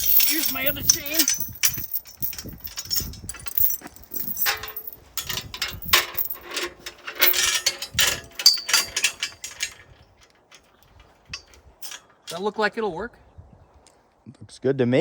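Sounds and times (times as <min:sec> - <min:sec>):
ringing metal clanks: 0:00.0 - 0:09.9, 0:10.5 - 0:12.5
metal chain rattling: 0:00.0 - 0:12.6.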